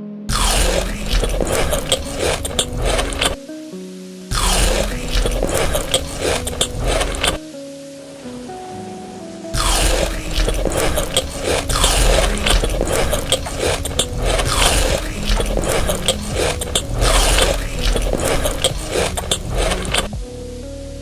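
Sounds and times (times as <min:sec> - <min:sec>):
crunching eating sounds: 0:00.3 - 0:03.4, 0:04.3 - 0:07.4, 0:09.6 - 0:20.2.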